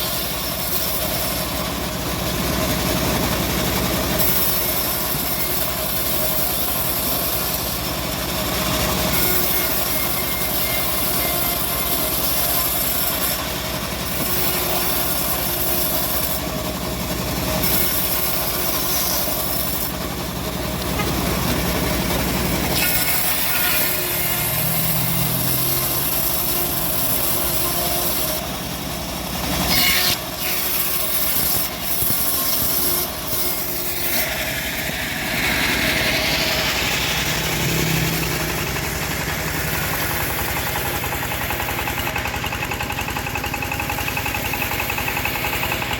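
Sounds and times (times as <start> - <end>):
bandsaw blade cutting wood: 0.0 - 45.9
engine hum: 0.1 - 30.4, 31.0 - 45.9.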